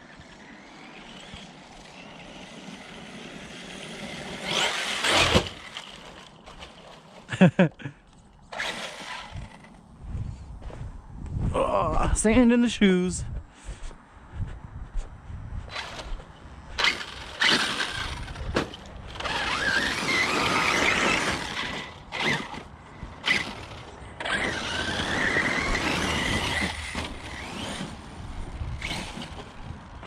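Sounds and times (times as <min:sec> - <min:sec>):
electric motor whining: 0:00.0 - 0:06.3, 0:08.5 - 0:09.8, 0:16.8 - 0:30.0.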